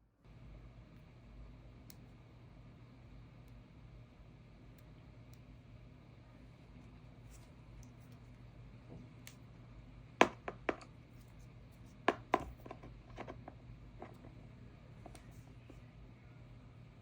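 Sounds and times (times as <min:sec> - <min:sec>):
low steady hum: 0:00.0 - 0:17.0
clicks and taps of small objects: 0:10.2 - 0:10.9, 0:12.0 - 0:14.4.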